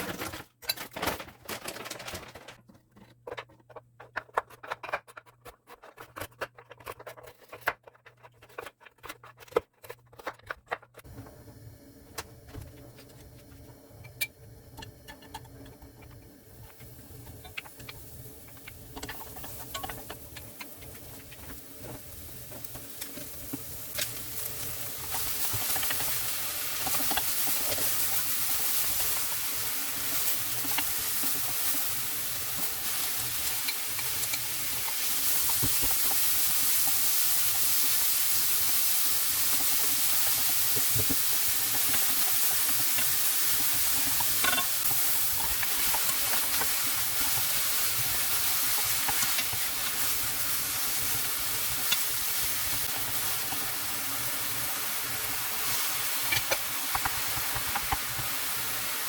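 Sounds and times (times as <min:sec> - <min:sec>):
food sizzling in a frying pan: 0:11.3 - 0:59.0
utensil clicking against pan: 0:16.8 - 0:21.6, 0:56.2 - 0:58.4.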